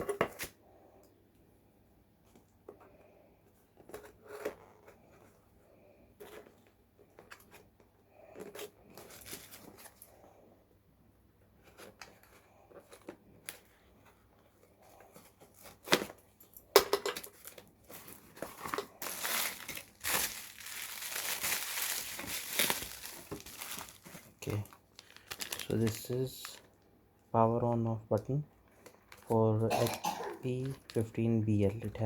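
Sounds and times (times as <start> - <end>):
packaging rustling: 6.3 - 10.1, 17.2 - 26.8, 28.7 - 29.4, 30.5 - 31.2
packaging crinkling and tearing: 8.3 - 10.1, 17.2 - 26.8, 28.8 - 29.9.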